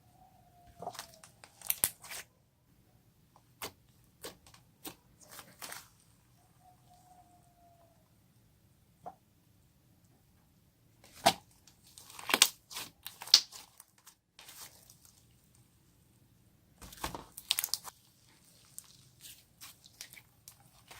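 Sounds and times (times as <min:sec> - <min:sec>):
slime crackling and popping: 0:00.9 - 0:02.2, 0:11.2 - 0:15.2, 0:16.8 - 0:20.9.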